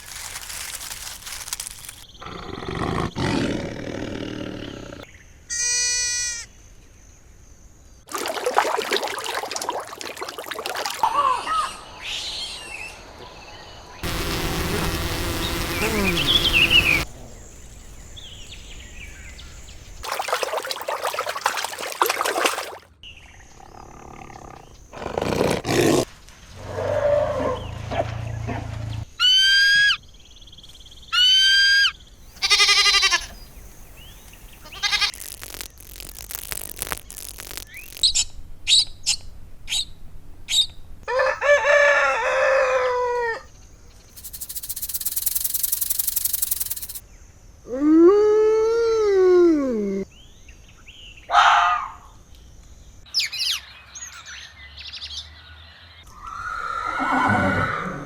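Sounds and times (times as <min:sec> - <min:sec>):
big cats roaring: 0:02.2 - 0:05.0, 0:23.5 - 0:28.6
short high-pitched animal calls: 0:05.5 - 0:06.4, 0:31.2 - 0:33.3, 0:34.6 - 0:35.2
rising high animal calls: 0:31.2 - 0:33.4, 0:34.6 - 0:35.2, 0:56.1 - 0:58.0.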